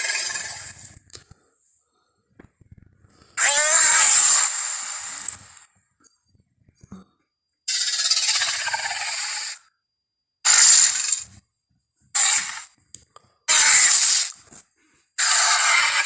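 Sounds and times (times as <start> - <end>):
raspy hissing dinosaur roar: 15.2 - 16.0.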